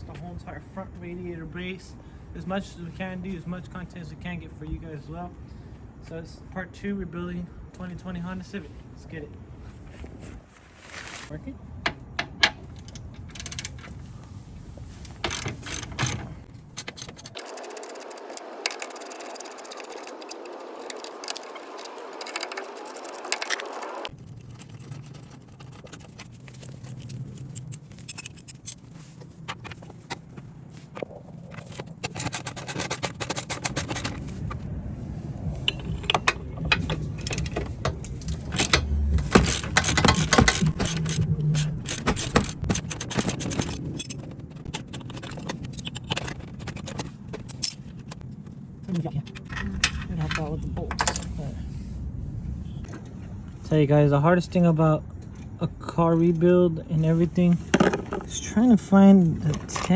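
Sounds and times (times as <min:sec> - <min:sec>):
metal scraping: 0:14.8 - 0:34.6, 0:35.2 - 0:53.1
socket ratchet clicking: 0:15.2 - 0:24.1, 0:38.1 - 0:47.8.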